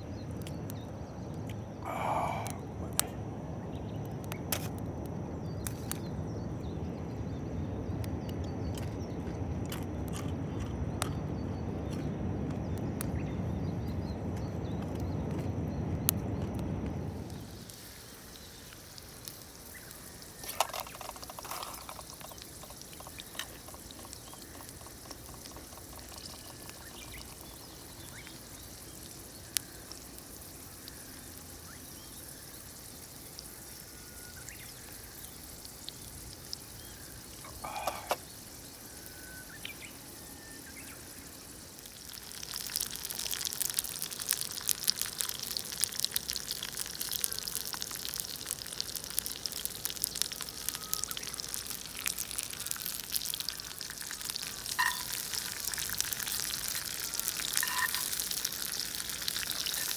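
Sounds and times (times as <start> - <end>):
potatoes sizzling in a pan: 17.2 - 59.9.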